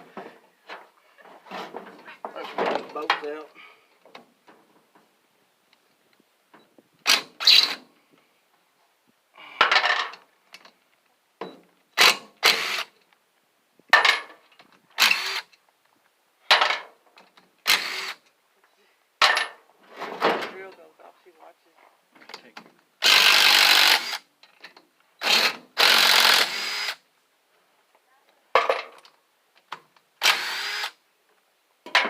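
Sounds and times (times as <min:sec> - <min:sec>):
power tool bursts: 0:07.0 - 0:07.8, 0:12.0 - 0:12.9, 0:15.0 - 0:15.5, 0:17.6 - 0:18.2, 0:23.0 - 0:24.2, 0:25.2 - 0:27.0, 0:30.2 - 0:31.0.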